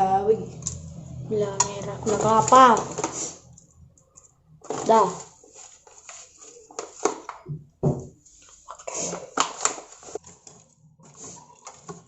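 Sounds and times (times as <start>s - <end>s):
scraping or rustling: 2.0s - 3.6s, 4.6s - 7.2s, 8.2s - 12.0s.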